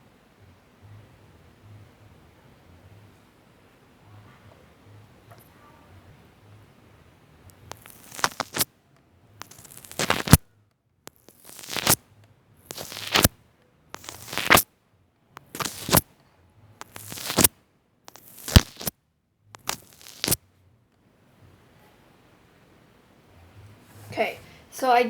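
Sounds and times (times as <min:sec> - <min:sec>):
slime squeezed crackling: 0:07.5 - 0:08.7, 0:09.4 - 0:10.4, 0:11.1 - 0:12.0, 0:12.7 - 0:13.3, 0:14.0 - 0:14.6, 0:15.4 - 0:16.1, 0:16.8 - 0:17.5, 0:18.1 - 0:18.9, 0:19.6 - 0:20.4.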